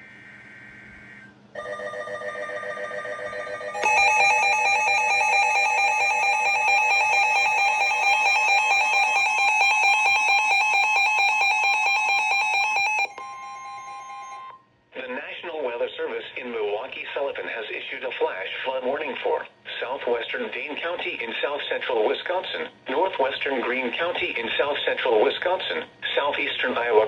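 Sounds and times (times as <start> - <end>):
harsh two-tone attention signal: 3.7 - 14.6.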